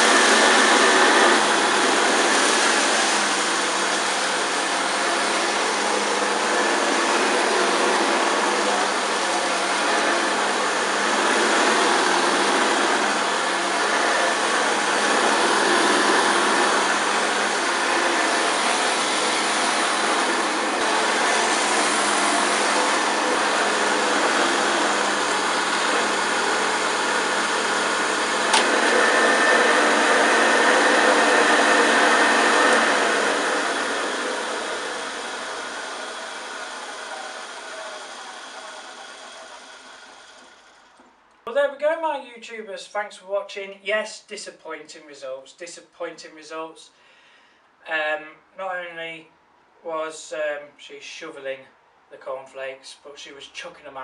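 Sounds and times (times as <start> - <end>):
upright vacuum cleaner running: 0.0 - 41.1.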